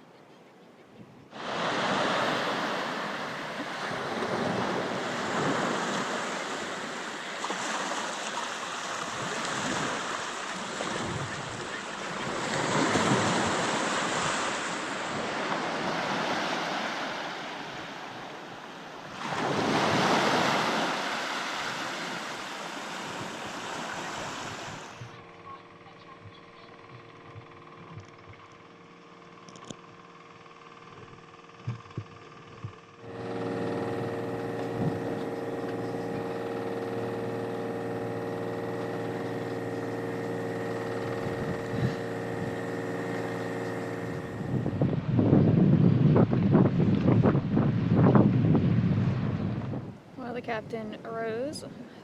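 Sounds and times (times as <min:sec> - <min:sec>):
ocean waves surging: 0:01.3 - 0:25.1, 0:33.0 - 0:45.2.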